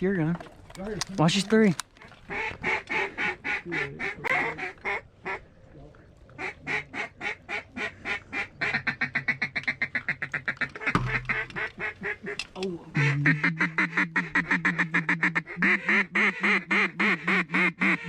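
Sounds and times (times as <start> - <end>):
duck call quacks: 13.0 - 18.0.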